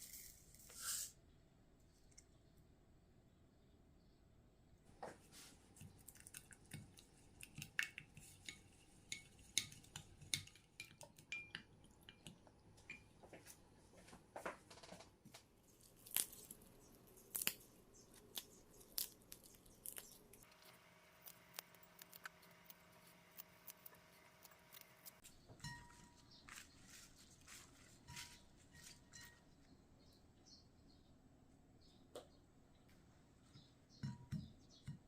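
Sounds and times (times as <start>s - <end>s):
utensils clinking against dishes: 25.6s - 26.3s.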